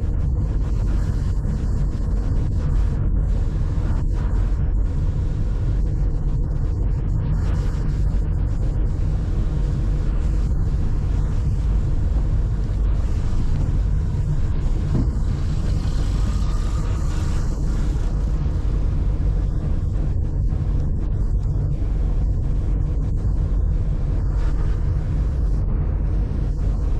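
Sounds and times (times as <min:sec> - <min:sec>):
hiss: 0:06.6 - 0:20.0, 0:24.0 - 0:25.6
car engine and road noise: 0:11.1 - 0:18.4.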